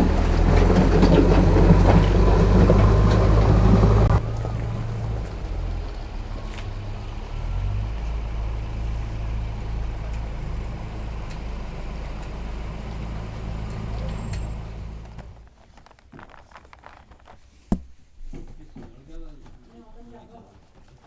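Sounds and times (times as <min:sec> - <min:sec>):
vehicle engine rumbling: 0:00.0 - 0:18.3.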